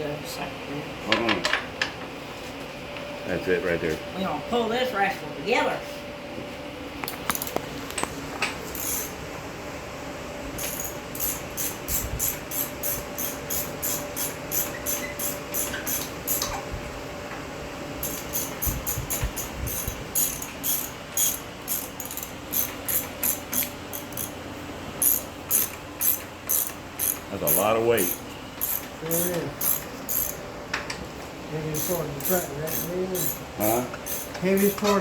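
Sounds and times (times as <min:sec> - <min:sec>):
ratchet clicking: 0:08.7 - 0:09.2, 0:10.6 - 0:16.6, 0:18.0 - 0:24.4, 0:25.0 - 0:30.4, 0:31.7 - 0:35.0.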